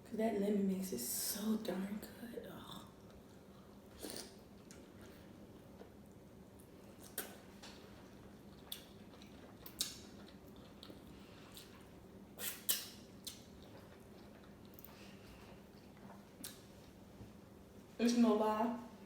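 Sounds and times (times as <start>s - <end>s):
faint steady hum: 0.0s - 19.0s
quiet chewing: 2.8s - 17.4s
wet mouth clicks and smacks: 7.0s - 7.4s, 8.6s - 11.7s, 12.4s - 13.7s, 16.4s - 16.7s.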